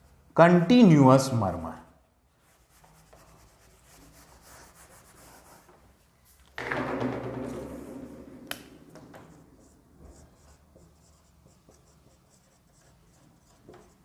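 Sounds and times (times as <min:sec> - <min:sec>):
pen scratching while writing: 0:09.2 - 0:14.0.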